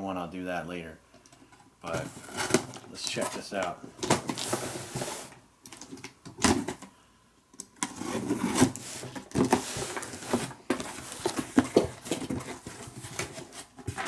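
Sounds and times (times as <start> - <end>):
cardboard scraping and knocking: 1.9 - 3.4, 7.9 - 14.0.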